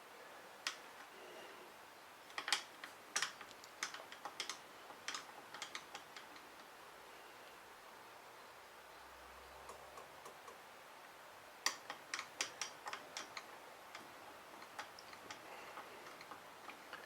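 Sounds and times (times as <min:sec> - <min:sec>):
tools clicking and tapping: 0:02.3 - 0:06.7, 0:11.7 - 0:17.0.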